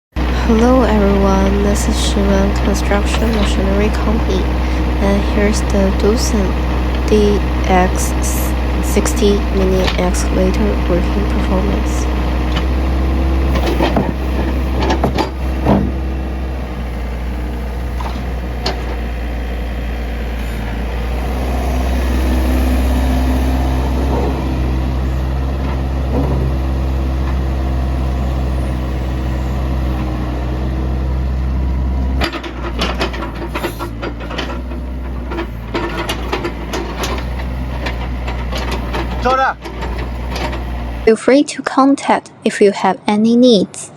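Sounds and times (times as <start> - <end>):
excavator diesel engine droning: 0.1 - 43.9
digging gear knocks and clanks: 13.5 - 16.0, 32.2 - 40.7.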